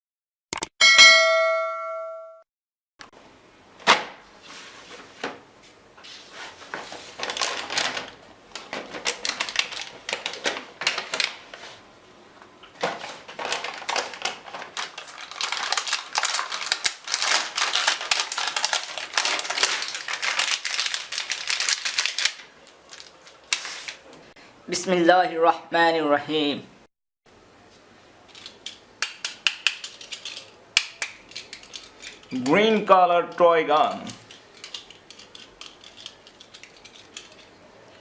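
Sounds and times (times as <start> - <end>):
plastic toys clicking and rattling: 7.2 - 11.4, 12.8 - 23.4, 28.3 - 32.6, 33.3 - 38.0.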